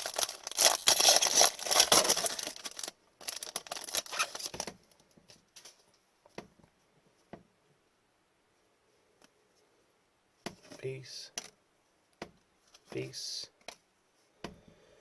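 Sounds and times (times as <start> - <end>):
foil wrapper crinkling and tearing: 0.0 - 4.7.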